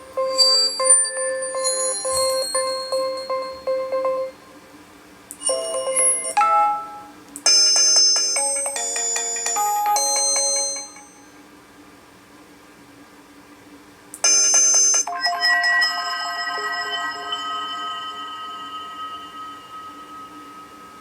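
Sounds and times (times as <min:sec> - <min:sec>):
run of chiming notes: 0:00.0 - 0:04.4, 0:08.3 - 0:11.3, 0:15.1 - 0:21.0.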